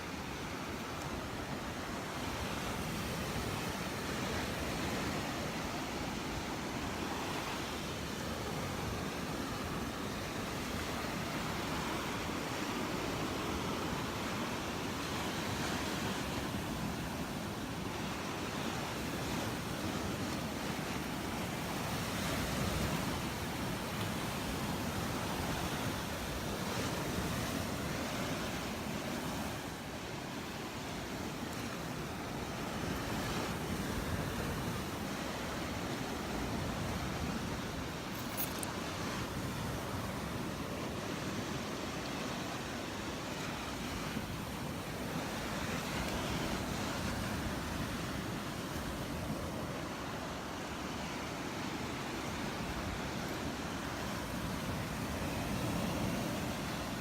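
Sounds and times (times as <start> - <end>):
surf washing onto sandy beach: 0.0 - 57.0.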